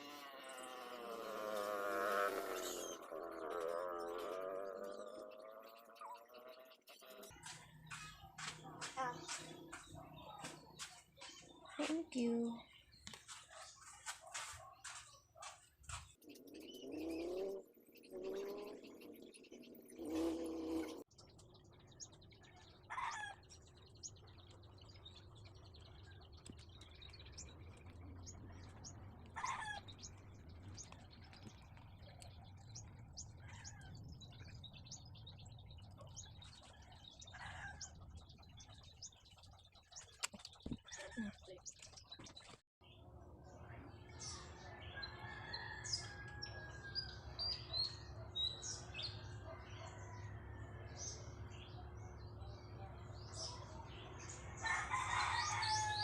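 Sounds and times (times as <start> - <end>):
birds calling: 0.0 - 43.0.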